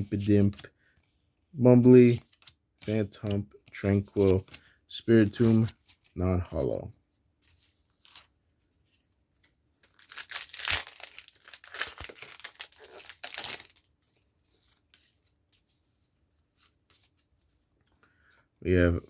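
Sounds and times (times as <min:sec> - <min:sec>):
cards rustling: 0:00.0 - 0:19.0
foil wrapper crinkling: 0:09.8 - 0:13.9.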